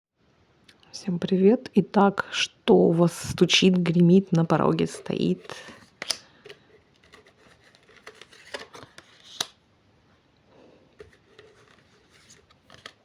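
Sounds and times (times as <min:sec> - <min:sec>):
cards rustling: 0:04.8 - 0:09.6, 0:11.0 - 0:13.0
card snaps and taps: 0:05.6 - 0:06.6, 0:07.2 - 0:09.6.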